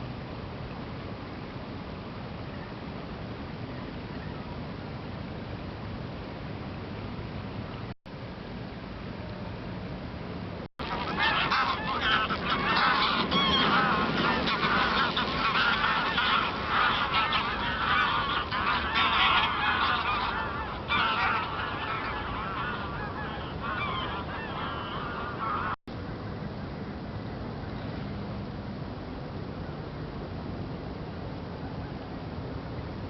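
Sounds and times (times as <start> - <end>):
geese honking: 10.8 - 25.8.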